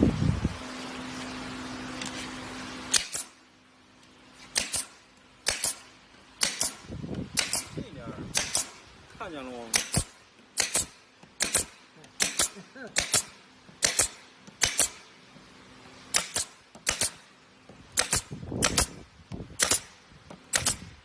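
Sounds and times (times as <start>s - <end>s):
nail gun firing: 2.9s - 3.4s, 4.5s - 8.8s, 9.7s - 15.1s, 16.1s - 17.3s, 17.9s - 21.0s.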